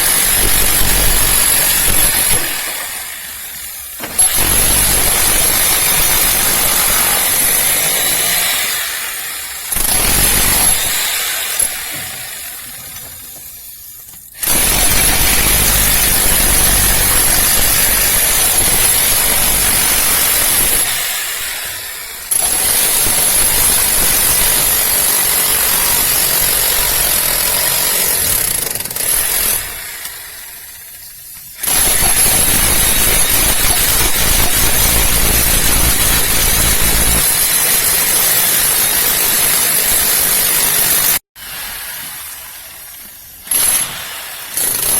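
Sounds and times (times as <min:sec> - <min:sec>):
demolition hammer breaking concrete: 0:00.0 - 0:13.1, 0:14.4 - 0:30.2, 0:31.6 - 0:41.2, 0:43.4 - 0:44.9.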